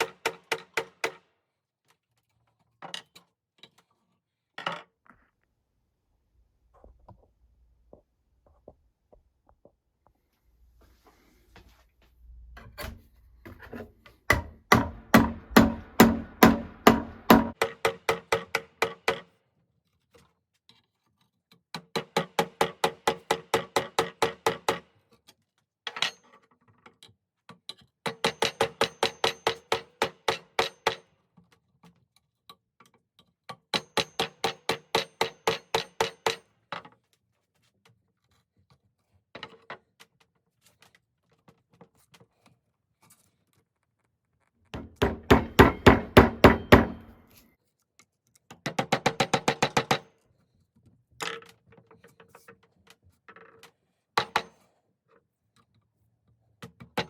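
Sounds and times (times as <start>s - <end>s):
rapid hammer blows on metal: 14.3s - 19.1s, 44.8s - 47.1s.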